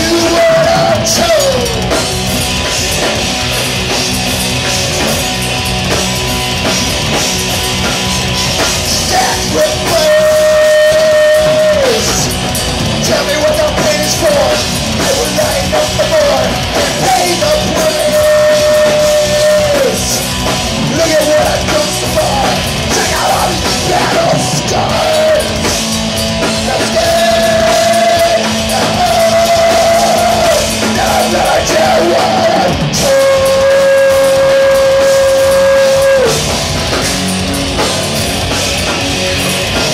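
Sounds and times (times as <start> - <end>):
live rock band playing: 0.0 - 39.9
lead singer holding long notes: 20.8 - 25.7, 26.6 - 36.6.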